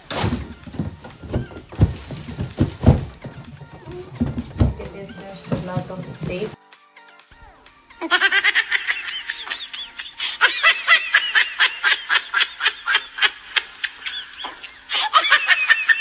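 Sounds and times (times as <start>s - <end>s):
high-pitched laughter: 8.0s - 16.0s.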